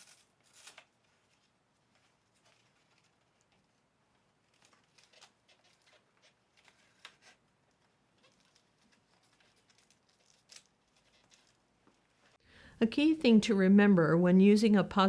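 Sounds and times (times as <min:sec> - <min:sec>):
faint clicks and rustles of handling: 0:00.0 - 0:12.5.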